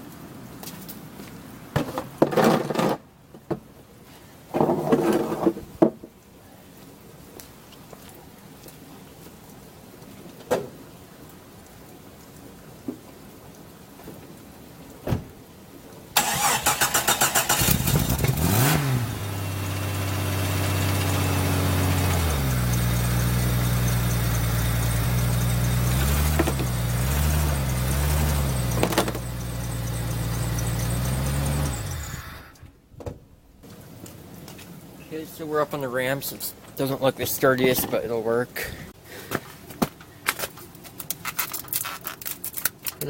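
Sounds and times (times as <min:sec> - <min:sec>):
starter motor cranking: 0:16.2 - 0:18.6, 0:25.7 - 0:32.6
car engine revving and idling: 0:16.9 - 0:32.6.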